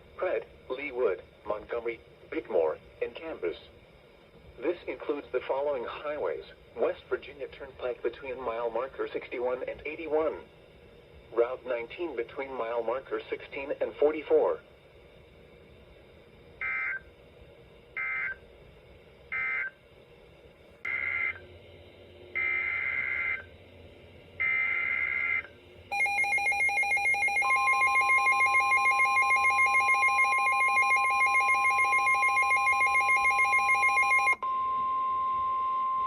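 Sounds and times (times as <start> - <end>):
rapidly pulsing alarm tone: 16.6 - 17.1, 17.9 - 18.4, 19.3 - 19.8, 20.9 - 34.4.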